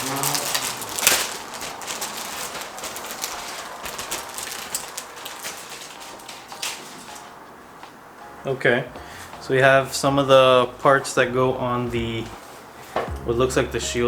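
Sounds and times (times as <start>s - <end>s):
plastic bags crinkling: 0.0s - 7.5s.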